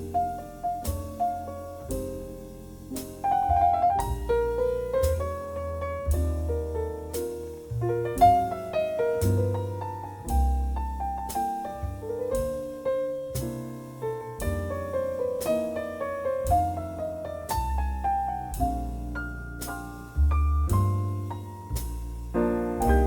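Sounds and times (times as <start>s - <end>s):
bass line: 0.0s - 23.0s
jazz piano melody: 0.0s - 23.0s.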